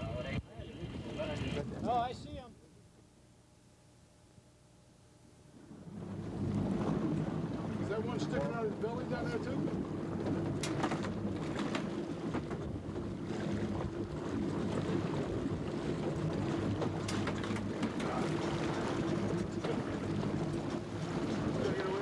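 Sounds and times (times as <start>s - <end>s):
water noise: 0.0s - 2.5s, 5.4s - 22.0s
boat engine droning: 0.0s - 2.9s, 5.1s - 22.0s
wind: 0.0s - 22.0s.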